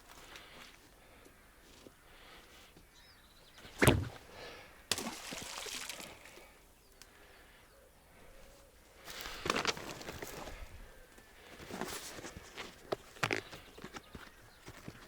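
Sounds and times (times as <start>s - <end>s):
water splashing and sloshing: 4.9s - 6.5s.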